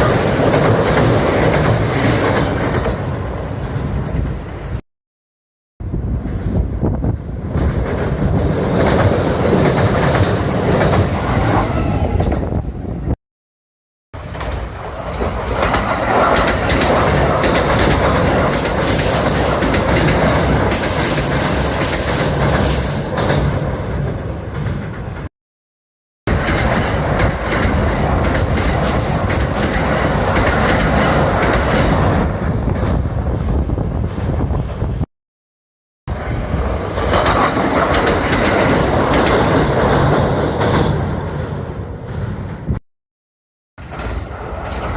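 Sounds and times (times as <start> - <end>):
train wheels clattering over rail joints: 0.0 - 3.2, 6.2 - 11.5, 14.2 - 25.3, 26.3 - 33.0, 36.2 - 42.8.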